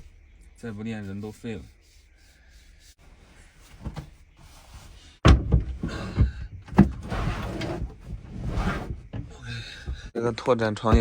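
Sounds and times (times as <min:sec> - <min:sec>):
bed scraping and sliding: 0:03.0 - 0:10.2.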